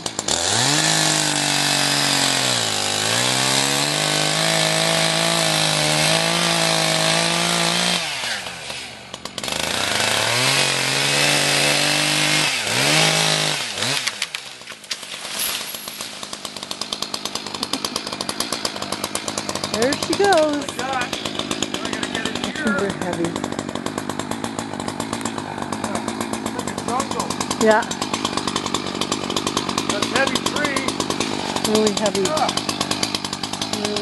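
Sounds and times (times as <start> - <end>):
chainsaw revving and idling: 0.0 - 34.0.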